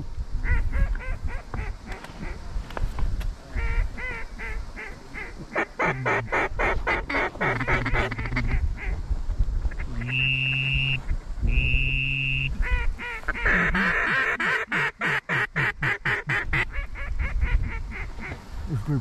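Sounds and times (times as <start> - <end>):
wind rumble on microphone: 0.0 - 14.1, 15.5 - 19.0
duck call quacks: 3.6 - 8.9, 10.0 - 11.0, 11.6 - 18.3.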